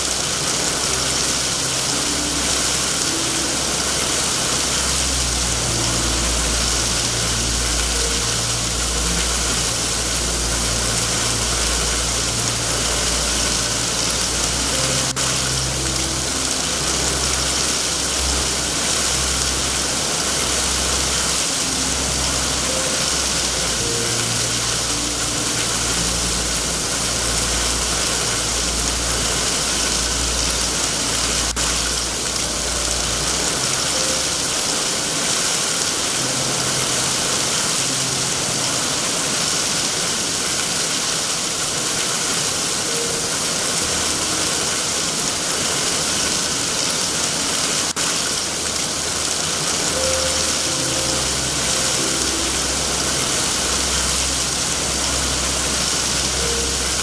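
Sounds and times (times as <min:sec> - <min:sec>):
low uneven rumble: 0:00.0 - 0:39.8, 0:43.4 - 0:57.0
heavy rain hiss: 0:00.0 - 0:57.0.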